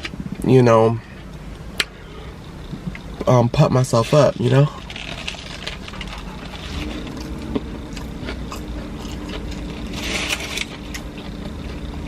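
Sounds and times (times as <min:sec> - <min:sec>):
steady low hum: 0:00.0 - 0:12.0
mouth chewing fried food: 0:04.0 - 0:12.0
crunchy bite: 0:04.8 - 0:12.0.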